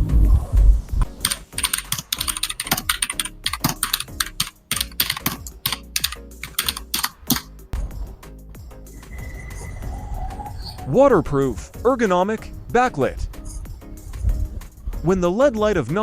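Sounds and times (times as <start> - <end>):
mechanical keyboard clacking: 1.1 - 7.5.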